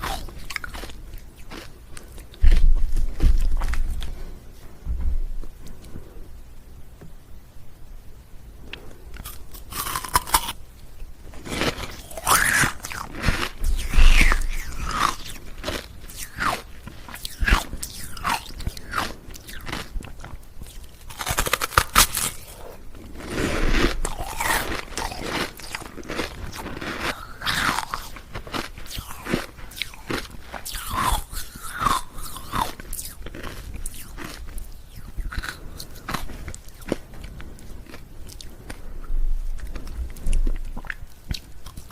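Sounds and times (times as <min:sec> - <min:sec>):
ice cubes crunching: 0:11.4 - 0:19.9, 0:23.2 - 0:37.0.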